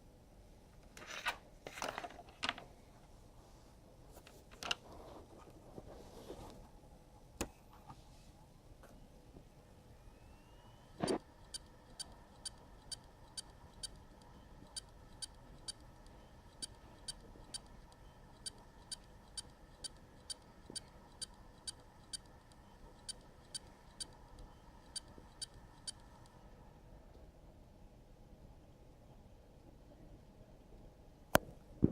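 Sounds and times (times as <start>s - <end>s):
spinning drive whine: 9.6s - 26.6s
hard drive short high beeps: 10.1s - 26.2s.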